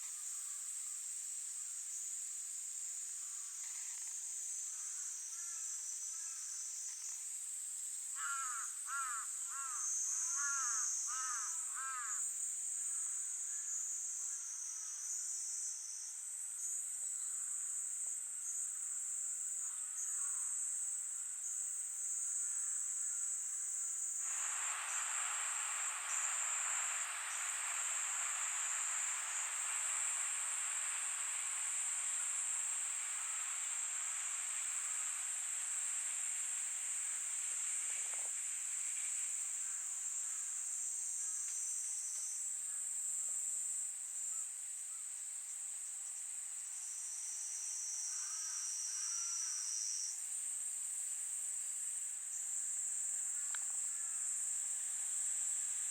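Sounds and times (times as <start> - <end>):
insects chirring: 0.0 - 55.9
lower-pitched insect: 0.0 - 55.9
soft rushing noise: 24.2 - 39.3.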